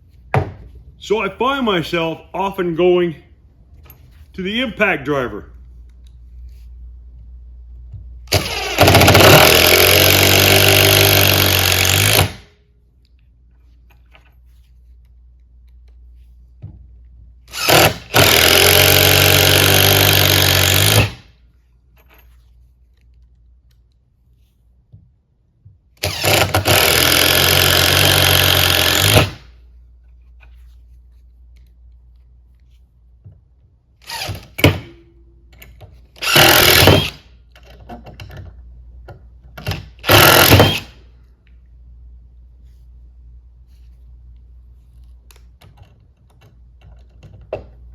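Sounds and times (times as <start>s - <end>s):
impact driver hammering: 8.3s - 12.5s, 17.6s - 21.3s, 26.0s - 29.5s, 34.2s - 35.1s, 36.2s - 37.3s, 39.6s - 41.0s.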